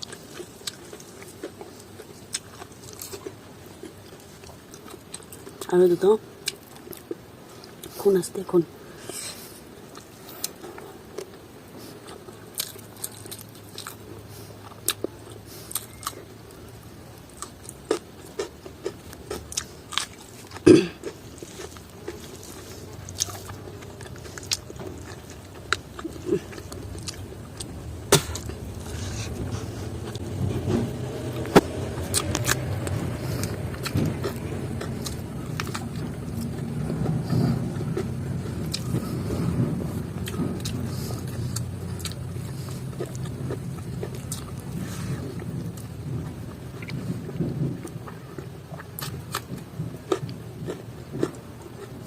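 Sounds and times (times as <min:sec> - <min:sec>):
chewing food: 0:00.0 - 0:52.0
low rumble: 0:22.4 - 0:48.8.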